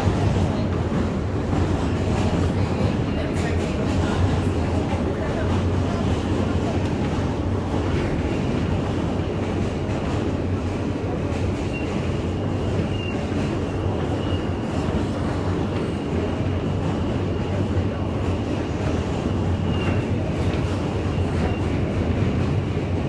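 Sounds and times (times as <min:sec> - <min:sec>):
subway train rumbling on rails: 0:00.0 - 0:23.0
faint high wheel squeal: 0:11.7 - 0:13.4, 0:14.1 - 0:14.8.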